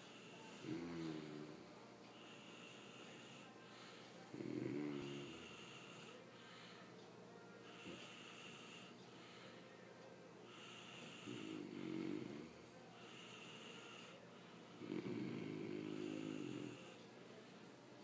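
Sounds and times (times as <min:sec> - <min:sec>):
loud snoring: 0:00.3 - 0:01.6, 0:04.3 - 0:06.1, 0:10.6 - 0:12.6, 0:14.8 - 0:17.0.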